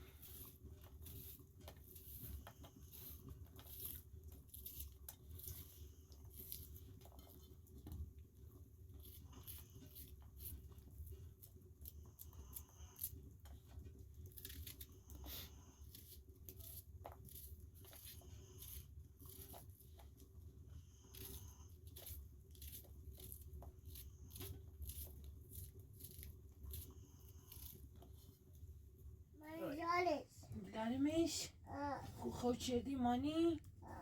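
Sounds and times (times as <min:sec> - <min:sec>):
low steady hum: 0:20.8 - 0:34.0.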